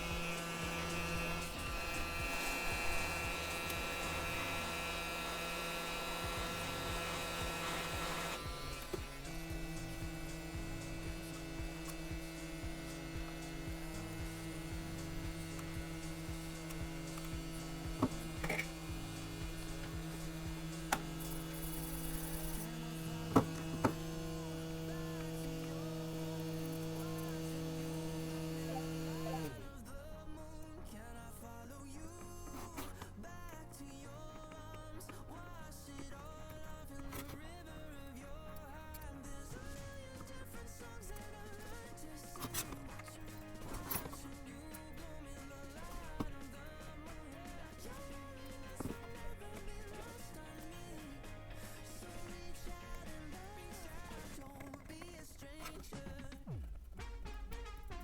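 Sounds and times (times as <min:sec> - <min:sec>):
air blowing hiss: 0:00.0 - 0:29.8
electrical hum: 0:00.0 - 0:58.0.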